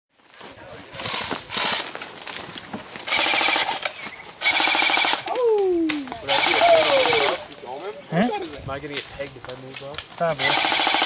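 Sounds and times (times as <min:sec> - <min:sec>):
airsoft rifles firing bursts: 0:03.1 - 0:05.3, 0:06.2 - 0:07.4, 0:10.4 - 0:11.0.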